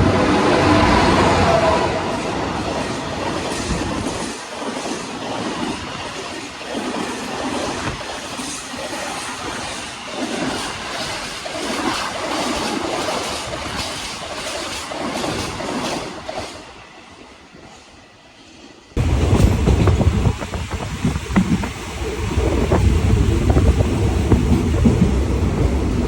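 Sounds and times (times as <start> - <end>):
wind buffeting microphone: 0.0 - 16.4, 19.0 - 26.0
train clickety-clack on rails: 0.0 - 26.0.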